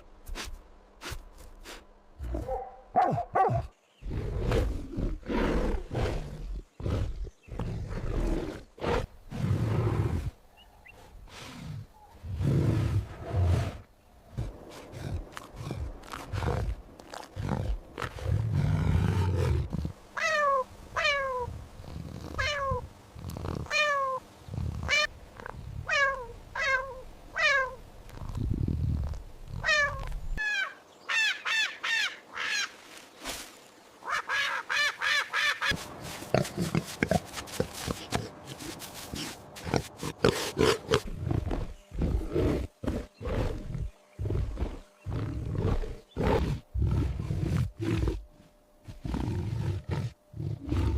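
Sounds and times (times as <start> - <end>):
animal growling: 39.6 - 50.9.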